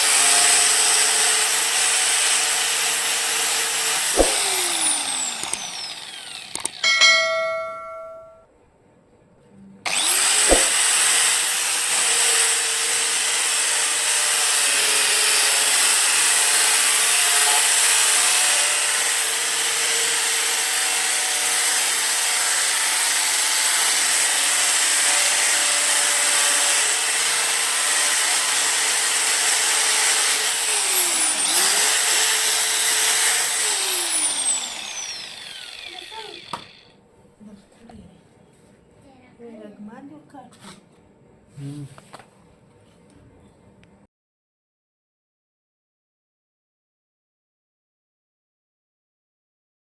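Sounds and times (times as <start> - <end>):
angle grinder whining: 0.0 - 8.3, 9.9 - 37.0.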